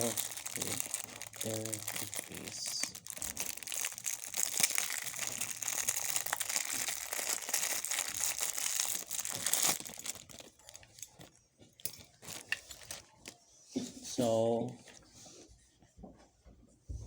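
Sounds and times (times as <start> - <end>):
plastic packaging crinkling: 0.0 - 13.4.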